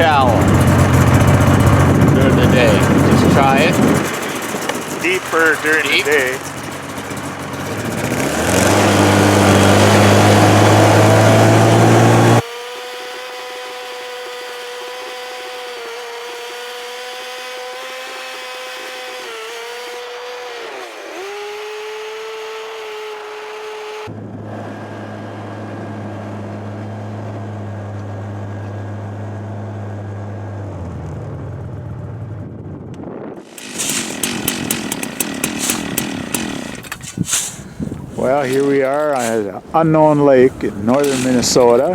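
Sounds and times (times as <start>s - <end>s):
low steady engine: 0.0s - 41.9s
small engine whining: 0.0s - 41.9s.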